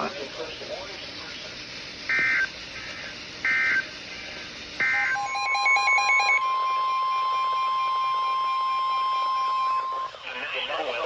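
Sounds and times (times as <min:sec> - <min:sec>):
harsh data buzzes: 0:00.0 - 0:11.0
long steady alert beep: 0:02.1 - 0:02.5, 0:03.5 - 0:03.8, 0:04.8 - 0:10.1.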